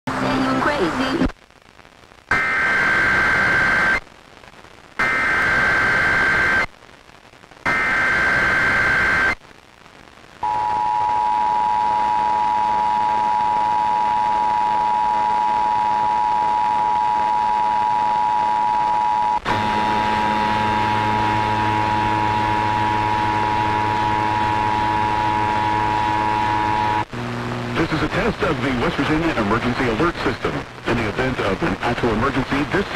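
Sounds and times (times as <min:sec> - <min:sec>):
low hum: 0:10.4 - 0:30.0.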